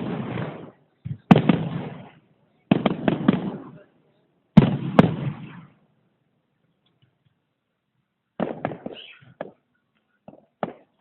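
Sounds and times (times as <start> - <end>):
sharp firework cracks: 0.0 - 3.8, 4.6 - 5.8, 8.4 - 9.6, 10.2 - 11.0
fireworks bangs: 0.0 - 3.9, 4.5 - 5.8, 8.4 - 11.0.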